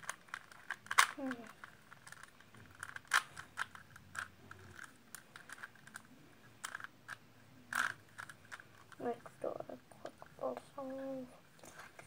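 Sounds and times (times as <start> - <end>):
plastic puzzle clicking and clacking: 0.0 - 12.0.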